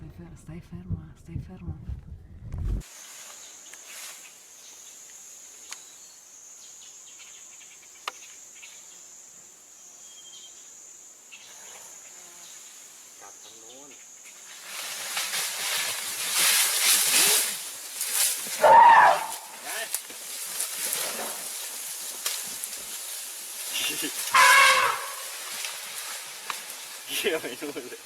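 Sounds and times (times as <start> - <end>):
high insect drone: 2.8 - 28.0
faint clicks: 25.6 - 26.8.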